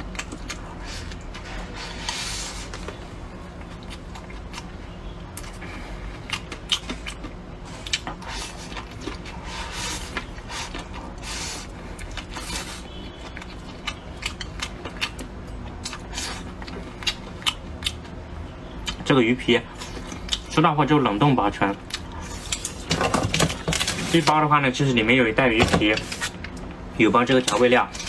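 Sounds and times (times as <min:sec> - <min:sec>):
chewing with mouth smacks: 0:00.0 - 0:02.1, 0:02.7 - 0:11.2, 0:13.1 - 0:18.2, 0:18.8 - 0:19.1, 0:19.8 - 0:20.5, 0:21.8 - 0:22.8.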